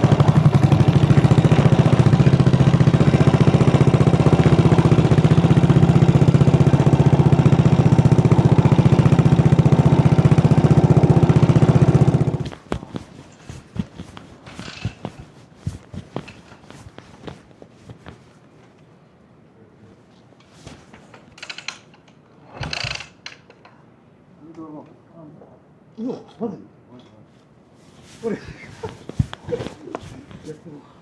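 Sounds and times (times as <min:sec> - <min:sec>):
motorcycle engine idling: 0:00.0 - 0:12.6.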